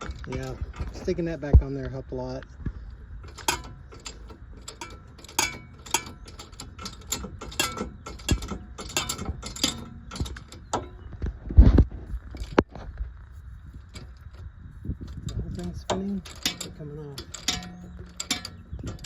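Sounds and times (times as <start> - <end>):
metallic clicks of hand tools: 3.2 - 11.0, 15.1 - 19.0.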